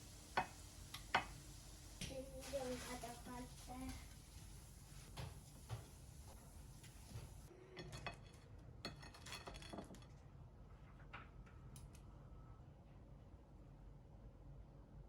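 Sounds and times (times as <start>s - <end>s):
faint clinking of dishes: 7.2s - 10.2s.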